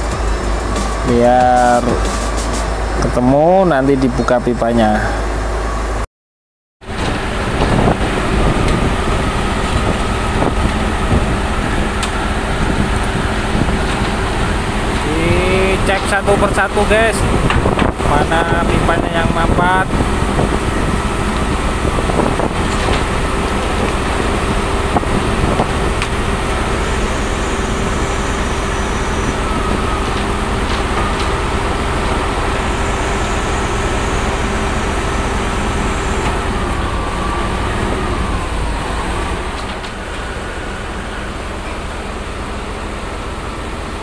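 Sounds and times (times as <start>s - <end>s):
diesel engine running with whine: 0.0s - 6.1s, 6.8s - 44.0s.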